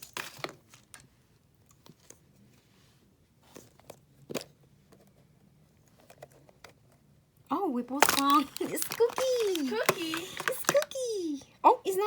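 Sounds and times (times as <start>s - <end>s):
package crinkling and clicking: 7.9s - 11.0s.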